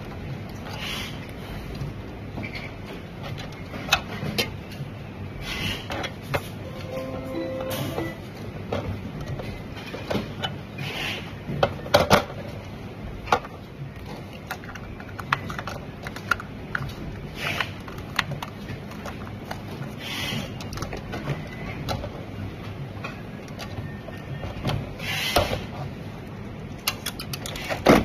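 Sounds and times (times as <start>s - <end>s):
fan parts clicking and knocking: 11.5s - 26.0s.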